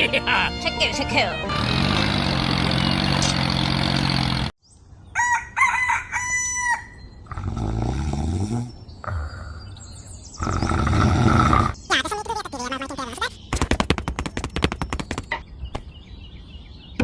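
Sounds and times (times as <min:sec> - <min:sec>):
engine hum: 0:00.1 - 0:04.5
rooster crowing: 0:05.2 - 0:07.1.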